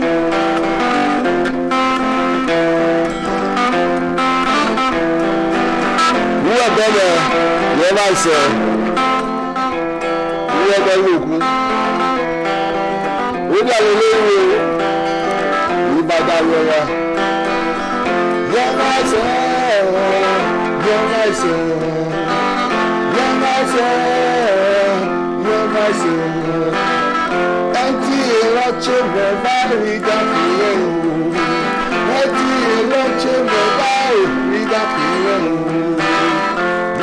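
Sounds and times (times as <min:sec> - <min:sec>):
guitar: 0:00.0 - 0:37.0
man singing: 0:00.0 - 0:37.0.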